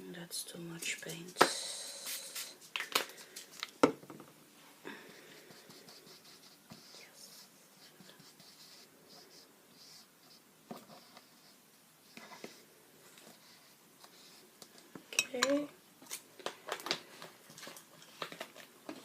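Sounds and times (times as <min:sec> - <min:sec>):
paintbrush rubbing on palette: 0:05.3 - 0:14.5.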